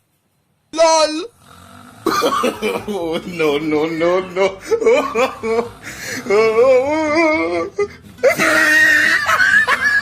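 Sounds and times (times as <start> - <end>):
person snoring with whine: 1.2 - 10.0
high squeaky laughs: 6.6 - 10.0.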